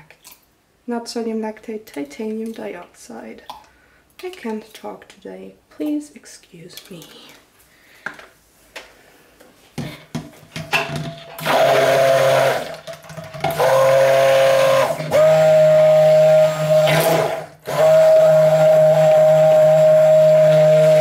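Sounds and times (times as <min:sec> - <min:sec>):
stick blender motor: 0:11.4 - 0:21.0.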